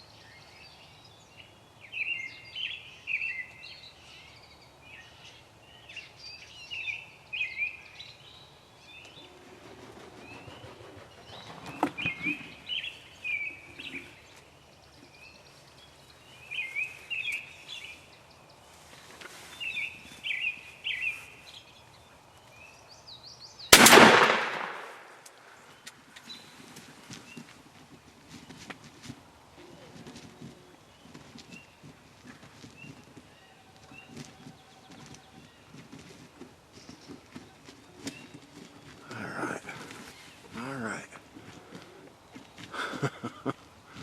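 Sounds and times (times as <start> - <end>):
small birds chirping: 0.0 - 23.8, 29.5 - 44.0
loud gunshot: 23.8 - 25.2.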